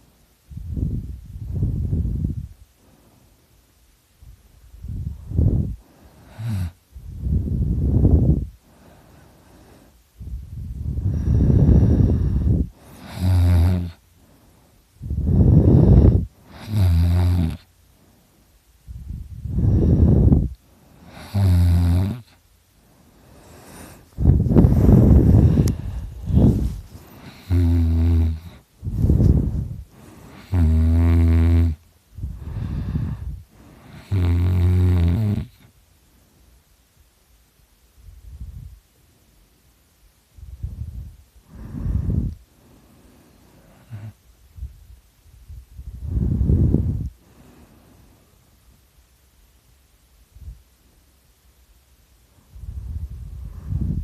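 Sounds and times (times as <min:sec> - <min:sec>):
rough noisy breath: 0:00.0 - 0:03.6, 0:04.8 - 0:34.5, 0:40.4 - 0:44.8, 0:45.6 - 0:48.6, 0:52.3 - 0:54.0
man snoring loudly: 0:12.9 - 0:14.0, 0:15.5 - 0:17.6, 0:21.1 - 0:22.4, 0:27.2 - 0:28.6, 0:30.4 - 0:31.8, 0:33.9 - 0:35.6.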